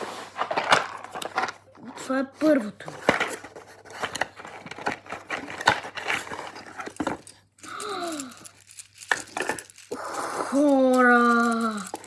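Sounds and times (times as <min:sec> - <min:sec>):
packaging rustling and tearing: 0:03.0 - 0:07.4.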